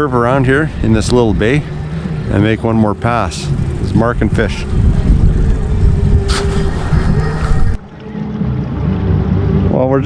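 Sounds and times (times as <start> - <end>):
boat motor running: 0.0 - 10.0
wind rumble on microphone: 0.0 - 10.0.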